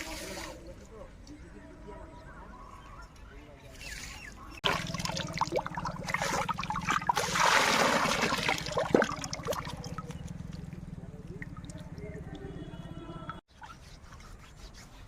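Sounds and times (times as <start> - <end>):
rush of water: 4.6 - 10.1
river water splashing and trickling: 4.6 - 14.2.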